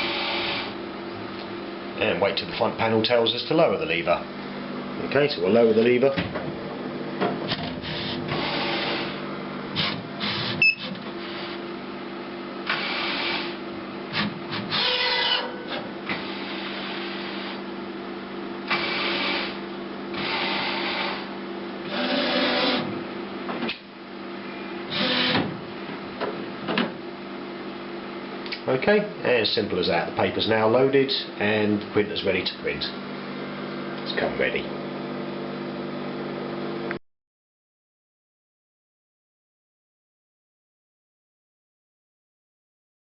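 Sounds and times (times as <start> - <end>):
printer mechanical hum: 0.0 - 36.2
printer motors whirring: 7.5 - 11.5, 18.6 - 23.0, 24.9 - 25.5.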